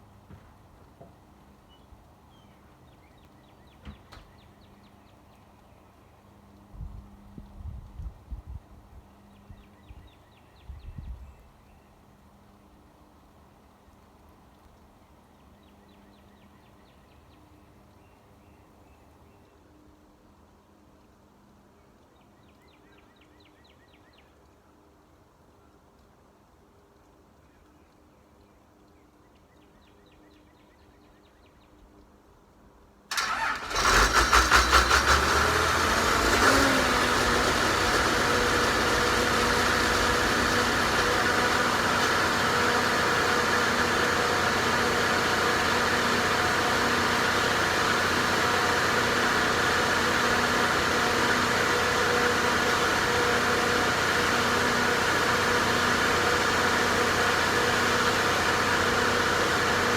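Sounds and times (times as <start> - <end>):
generator engine starting and running: 33.1 - 59.9.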